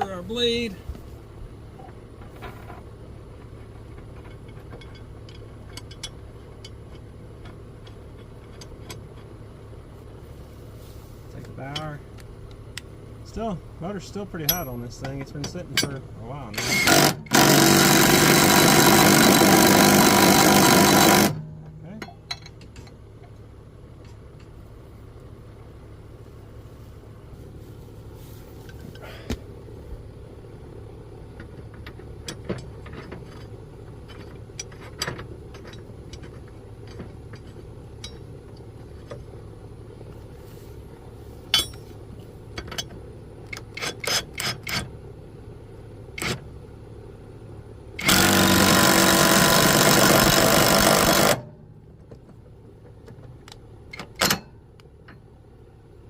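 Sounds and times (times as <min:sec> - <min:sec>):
low steady hum: 0:00.0 - 0:56.0
metal clinks and knocks: 0:01.8 - 0:09.4, 0:14.4 - 0:17.4, 0:20.4 - 0:23.4, 0:31.4 - 0:39.1, 0:41.5 - 0:43.0
impact wrench hammering: 0:16.6 - 0:21.4, 0:48.0 - 0:51.5.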